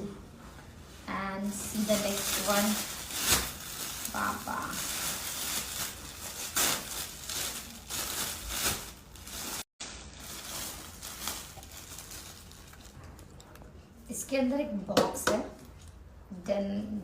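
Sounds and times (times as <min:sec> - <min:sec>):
gift packaging rustling: 0:01.6 - 0:13.4.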